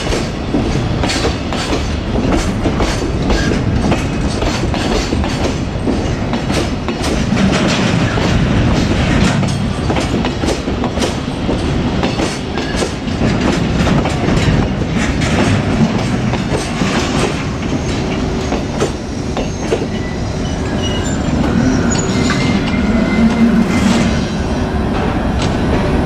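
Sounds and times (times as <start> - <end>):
wheels clicking over rail joints: 0.0 - 19.9
train rumble: 0.0 - 26.0
wheel squeals: 17.7 - 24.3.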